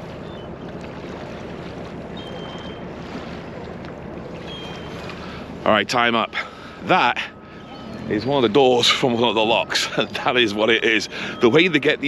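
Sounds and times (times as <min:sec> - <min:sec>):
water noise: 0:00.0 - 0:12.0
wind: 0:00.0 - 0:12.0
faint high-pitched tones: 0:07.0 - 0:12.0.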